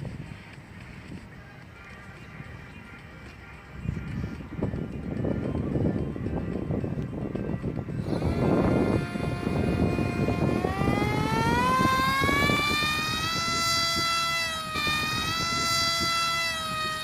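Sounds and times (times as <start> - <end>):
wind rumbling on microphone: 0.0 - 2.8, 3.7 - 17.0
model plane motor whining: 8.0 - 17.0.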